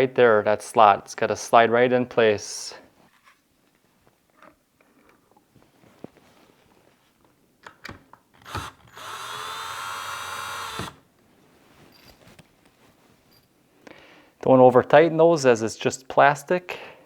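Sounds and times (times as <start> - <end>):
cordless drill driving a screw: 8.4 - 11.0.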